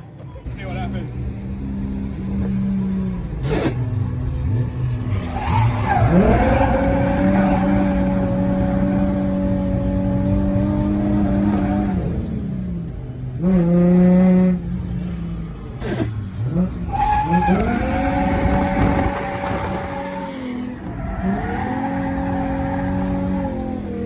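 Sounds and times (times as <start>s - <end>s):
car engine revving hard: 0.5s - 24.0s
tyres squealing: 5.2s - 9.5s, 16.8s - 24.0s.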